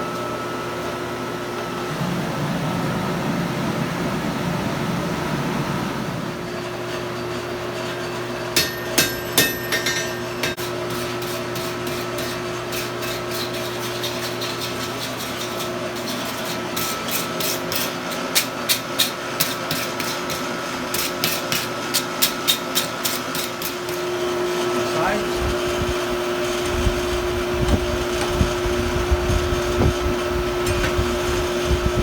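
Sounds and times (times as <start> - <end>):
forge blower hum: 0.0 - 32.0
hammer striking hot steel on anvil: 8.4 - 12.5.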